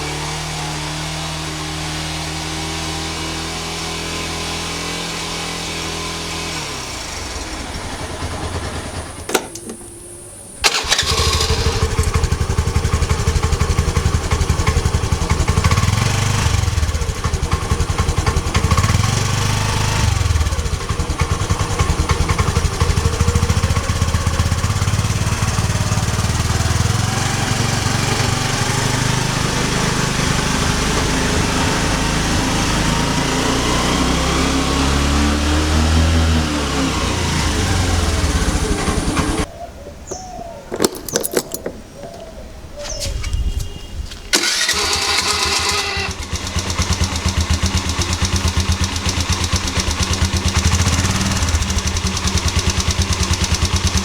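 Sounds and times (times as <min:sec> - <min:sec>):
motorcycle engine running: 0:00.0 - 0:10.0, 0:10.6 - 0:39.5, 0:44.3 - 0:54.0
click: 0:09.3 - 0:10.0.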